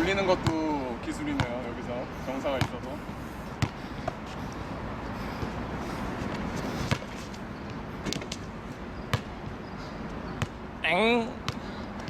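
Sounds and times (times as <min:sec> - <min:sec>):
steady background noise: 0:00.0 - 0:12.0
basketball bouncing on court: 0:01.3 - 0:01.7, 0:02.5 - 0:04.2, 0:06.9 - 0:07.2, 0:09.1 - 0:09.6, 0:10.4 - 0:10.6.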